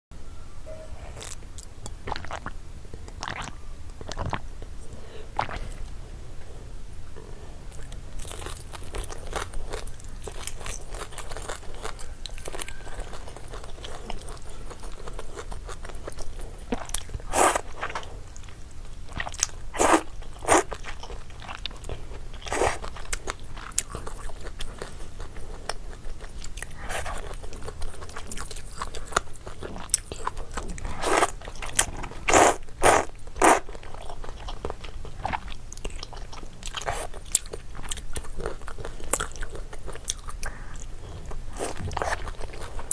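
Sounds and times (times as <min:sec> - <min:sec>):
chewing and wet mouth sounds: 0:01.1 - 0:42.9
noodle slurps: 0:17.3 - 0:18.0, 0:19.8 - 0:20.7, 0:22.5 - 0:22.9, 0:30.6 - 0:33.7.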